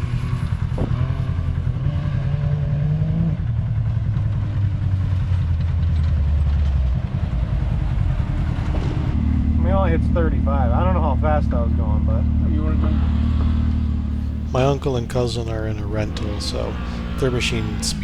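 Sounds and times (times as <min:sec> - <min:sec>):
engine pulling under throttle: 0:14.1 - 0:18.0.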